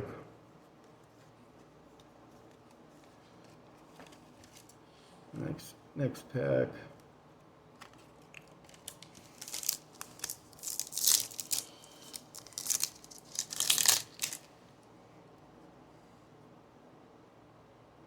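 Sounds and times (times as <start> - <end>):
plastic foil wrapper tearing and crinkling: 8.3 - 14.5.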